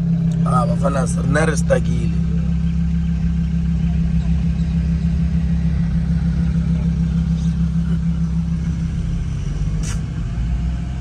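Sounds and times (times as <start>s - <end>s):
car engine running: 0.0s - 11.0s
short sharp click: 9.8s - 10.1s.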